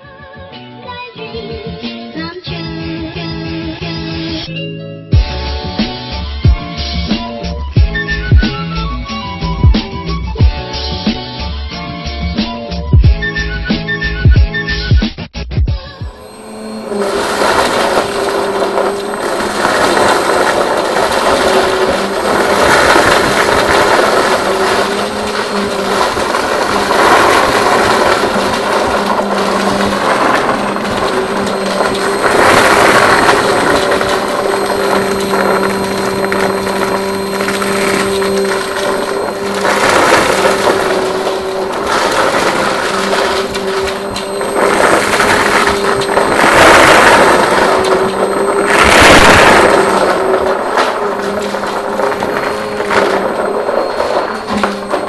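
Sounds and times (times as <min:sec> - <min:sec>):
vacuum cleaner running: 0:15.8 - 0:55.0.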